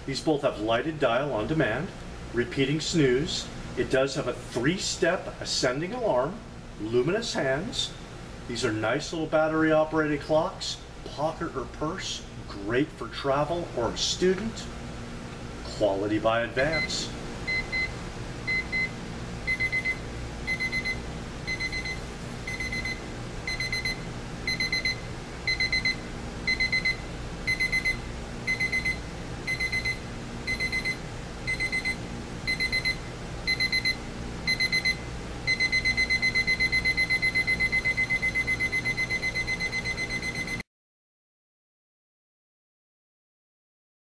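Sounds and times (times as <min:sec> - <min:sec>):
alarm clock beeping: 0:19.5 - 0:40.6.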